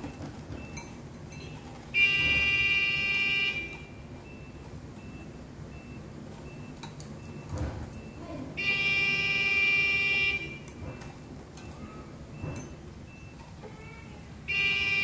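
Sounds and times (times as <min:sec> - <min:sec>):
loud buzzy horn: 0:02.0 - 0:03.8, 0:08.6 - 0:10.6, 0:14.5 - 0:15.0
faint high beeps: 0:10.0 - 0:13.5.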